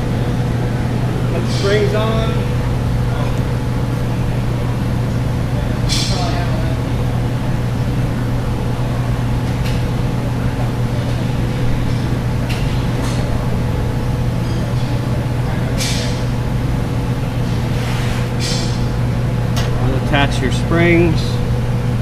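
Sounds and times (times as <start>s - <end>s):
low machine hum: 0.0s - 22.0s.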